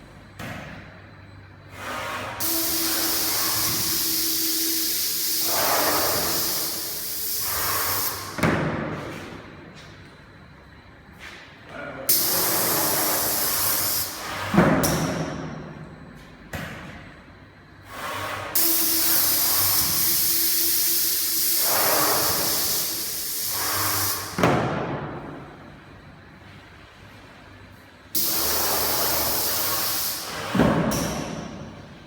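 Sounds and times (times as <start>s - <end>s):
cnc machine running: 2.4s - 8.3s
loud steady hissing: 2.4s - 8.4s, 12.1s - 14.5s, 18.0s - 24.4s, 28.2s - 30.5s.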